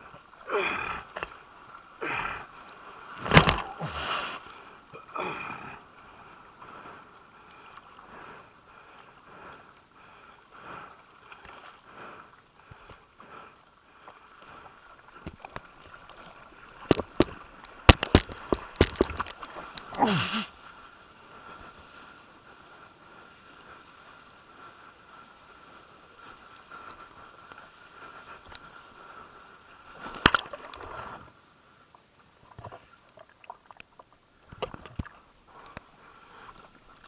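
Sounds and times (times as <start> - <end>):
person grunting: 5.0 - 5.7, 20.0 - 20.5
water sloshing against a board: 13.9 - 20.1, 30.0 - 31.2
sharp clicks and knocks: 16.9 - 19.4
person groaning: 20.0 - 20.5
person sniffing and breathing: 20.0 - 20.6.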